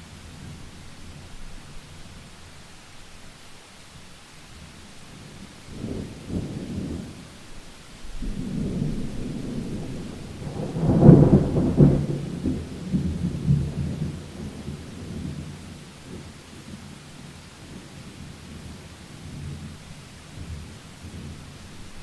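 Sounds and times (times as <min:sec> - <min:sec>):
steady rain: 0:00.0 - 0:22.0
thunder rumbling: 0:08.1 - 0:16.3.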